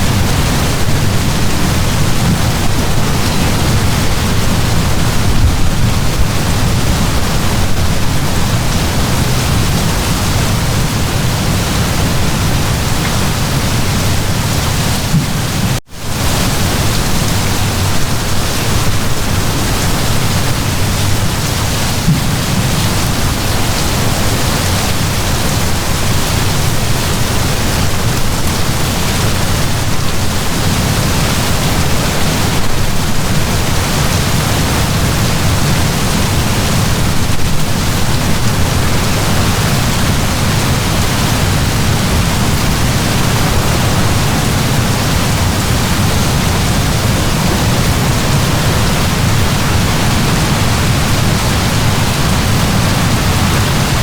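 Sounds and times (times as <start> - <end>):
heavy rain pouring: 0.0 - 54.0.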